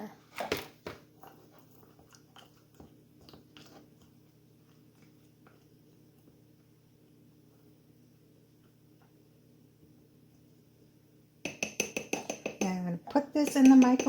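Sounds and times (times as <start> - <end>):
spoon clicking against dish: 11.5 - 12.8, 13.4 - 14.0
frozen berries tapping and crunching: 11.5 - 14.0.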